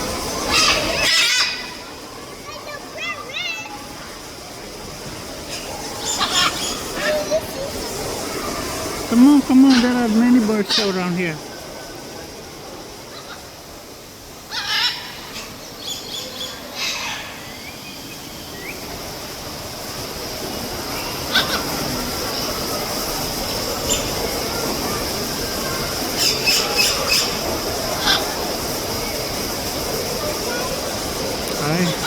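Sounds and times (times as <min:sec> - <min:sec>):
steady hiss: 0:00.0 - 0:32.0
birds calling in sharp bursts: 0:05.5 - 0:11.4.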